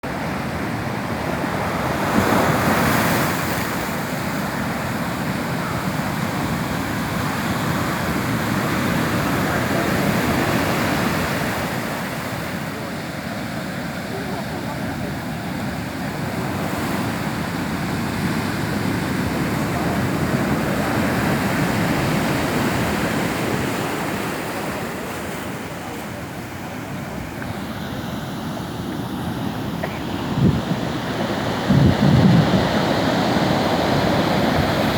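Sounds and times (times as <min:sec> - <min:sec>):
waves washing onto a beach: 0:00.0 - 0:34.9.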